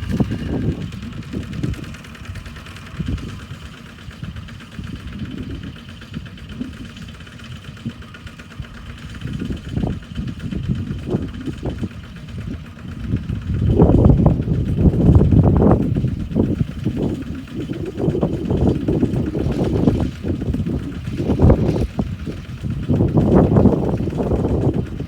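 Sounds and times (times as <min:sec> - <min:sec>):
diesel engines chugging: 0:00.0 - 0:25.0.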